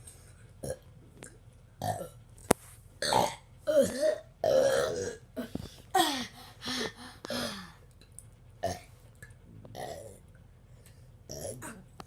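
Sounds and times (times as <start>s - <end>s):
person burping: 3.0s - 7.7s, 11.3s - 11.9s.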